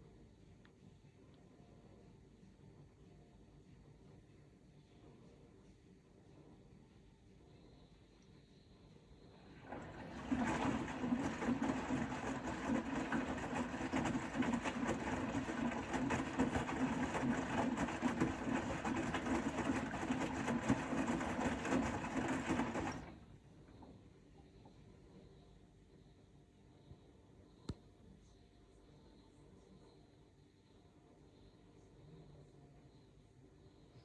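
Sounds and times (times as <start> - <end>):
washing machine drum turning: 9.6 - 23.2.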